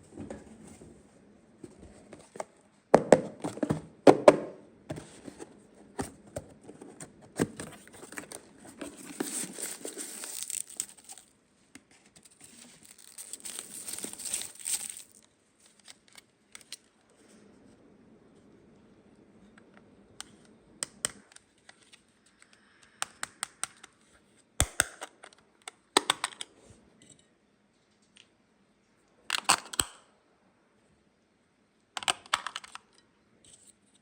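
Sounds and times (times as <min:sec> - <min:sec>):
packaging crinkling and tearing: 0:07.7 - 0:11.3, 0:12.2 - 0:16.0.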